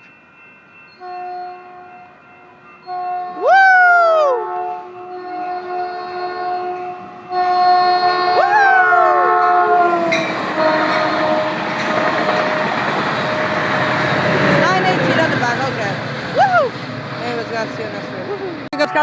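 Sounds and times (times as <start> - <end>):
train wheels rumbling on rail: 0.0 - 19.0
train air horn: 1.0 - 2.1, 4.2 - 14.3.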